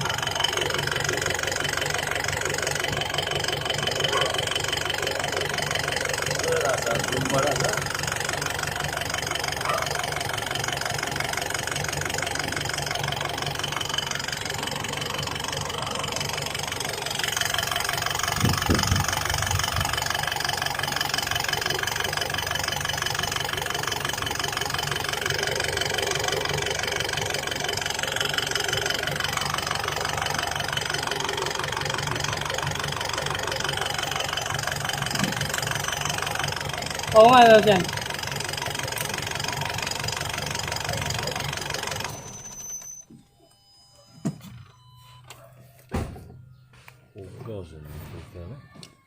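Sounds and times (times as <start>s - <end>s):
diesel engine idling: 0.0s - 43.7s.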